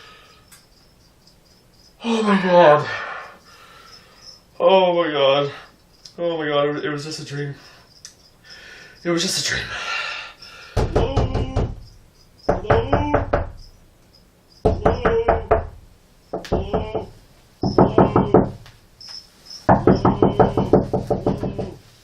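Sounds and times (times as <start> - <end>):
rapid knocking on door: 10.7 - 13.8, 14.6 - 18.7, 19.7 - 21.8.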